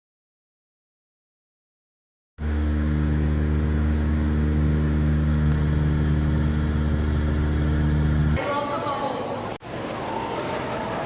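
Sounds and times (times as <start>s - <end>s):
motor humming steadily: 2.4s - 8.4s.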